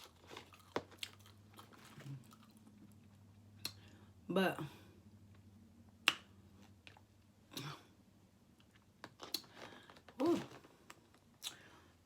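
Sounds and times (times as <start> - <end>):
chewing and smacking: 0.0 - 3.9, 8.6 - 9.9, 10.8 - 11.7.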